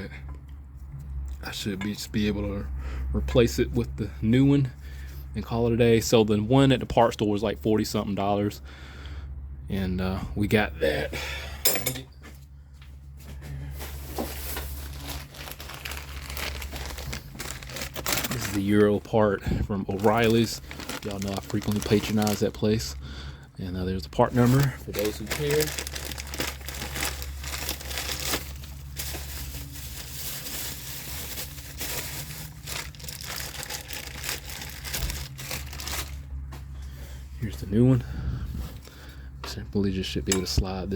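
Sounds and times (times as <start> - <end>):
steady low hum: 8.4 - 40.9
packaging rustling: 13.6 - 23.0, 24.1 - 36.4.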